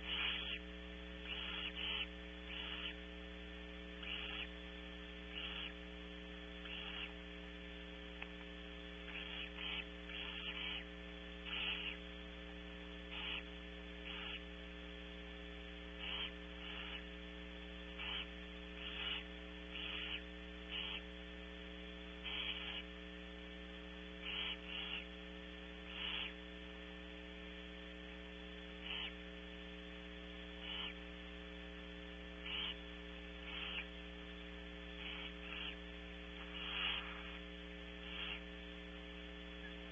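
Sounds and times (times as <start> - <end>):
owls hissing: 0.0 - 0.6, 1.3 - 3.0, 9.1 - 10.9, 11.5 - 12.0, 13.1 - 13.4, 14.0 - 14.4, 16.0 - 17.0, 22.2 - 22.8, 24.2 - 25.0, 25.9 - 26.3, 28.8 - 29.1, 30.6 - 31.0, 32.4 - 32.8, 33.4 - 33.9, 35.0 - 35.8, 36.4 - 37.4, 38.0 - 38.4
steady electrical hum: 0.0 - 39.9.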